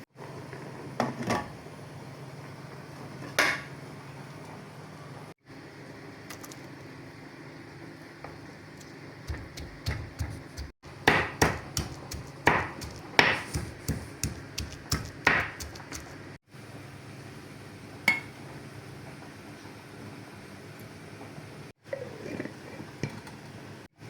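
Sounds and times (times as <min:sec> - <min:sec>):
hard knocks: 0:09.3 - 0:16.1.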